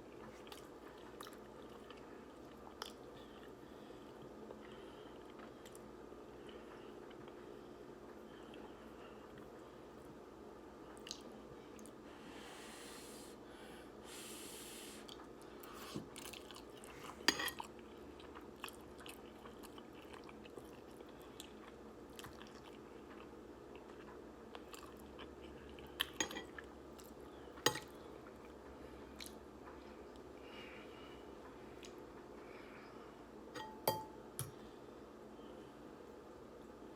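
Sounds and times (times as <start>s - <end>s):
faint chewing: 0.1s - 10.1s, 10.9s - 12.0s, 15.0s - 32.6s
breathy slurping hiss: 12.2s - 13.4s, 14.0s - 15.1s.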